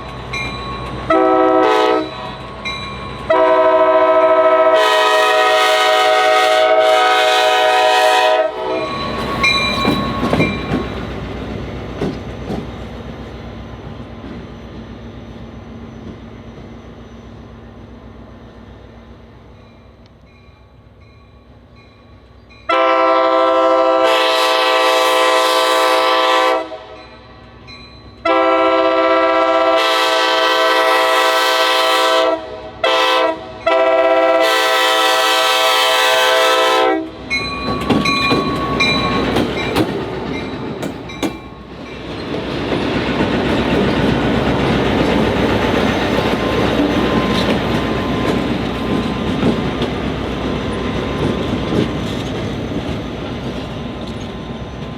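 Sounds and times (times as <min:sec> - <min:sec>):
train wheel and rail noise: 0:00.0 - 0:54.9
locomotive air horn blasts: 0:01.1 - 0:02.2, 0:03.3 - 0:09.2, 0:22.7 - 0:27.0, 0:28.2 - 0:37.2
wheels clacking over rail joints: 0:08.9 - 0:13.3, 0:37.3 - 0:54.9.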